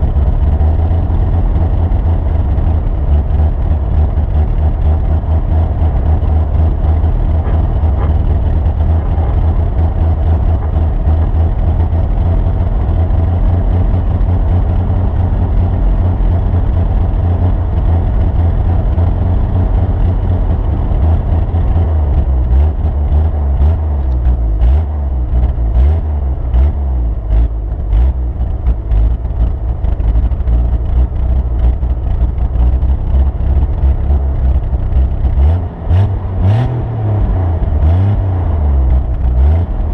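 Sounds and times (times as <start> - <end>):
vehicle engine deep rumble: 0.0 - 39.9
knocks and rattles: 6.6 - 12.7.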